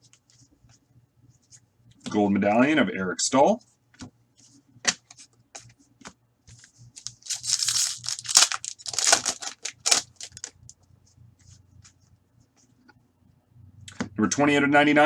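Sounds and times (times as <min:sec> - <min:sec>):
cards rustling and scraping: 0:06.6 - 0:10.6.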